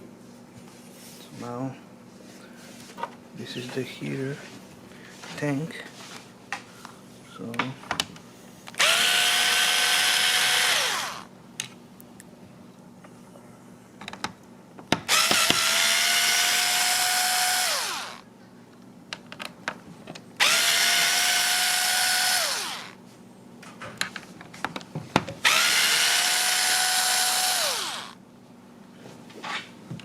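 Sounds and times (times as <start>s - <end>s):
power drill running: 8.8s - 11.3s, 15.1s - 18.2s, 20.4s - 23.0s, 25.4s - 28.2s.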